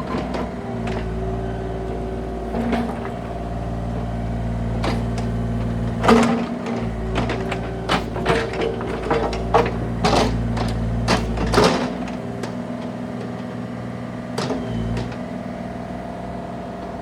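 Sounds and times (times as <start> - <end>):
excavator diesel engine: 0.0 - 17.0.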